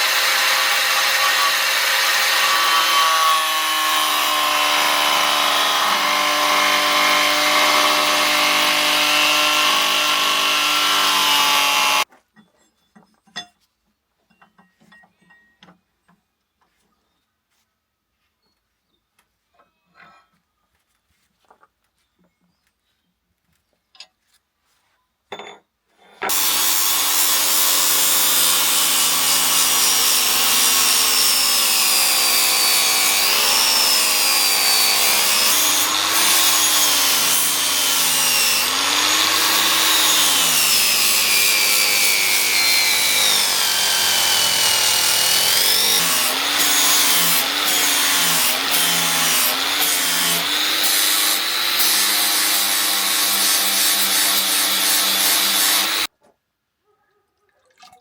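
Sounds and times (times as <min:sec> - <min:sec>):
power tool motor running: 0:00.0 - 0:12.0, 0:26.3 - 0:56.1.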